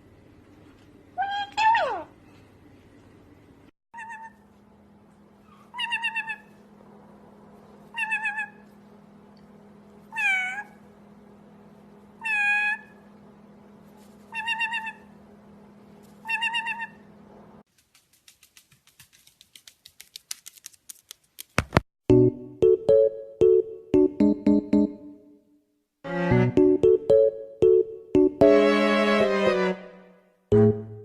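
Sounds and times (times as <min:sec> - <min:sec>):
pet meowing: 0:10.1 - 0:10.8, 0:16.2 - 0:17.0.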